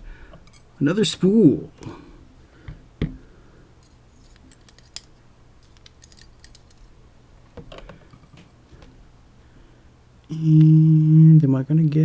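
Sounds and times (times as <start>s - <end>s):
small metal pins clicking: 4.2s - 7.0s.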